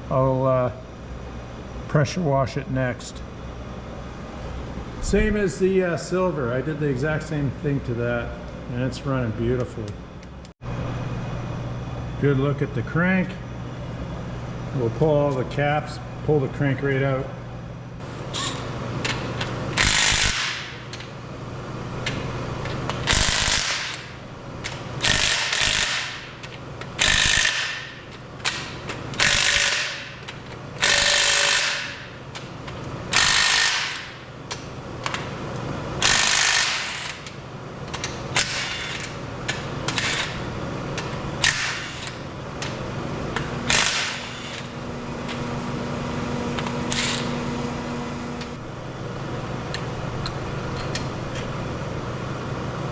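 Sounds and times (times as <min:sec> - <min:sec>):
power wrench bursts: 0:27.0 - 0:27.8, 0:29.2 - 0:30.0, 0:30.8 - 0:32.0, 0:33.1 - 0:34.1, 0:36.0 - 0:37.2, 0:43.7 - 0:44.7, 0:46.6 - 0:47.9.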